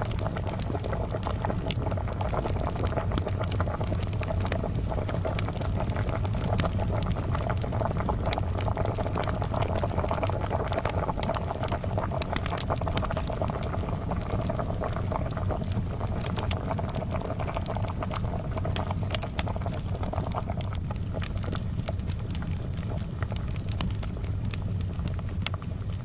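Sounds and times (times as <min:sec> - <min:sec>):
charcoal fire crackling: 0:00.0 - 0:26.0
kettle bubbling: 0:00.0 - 0:26.0.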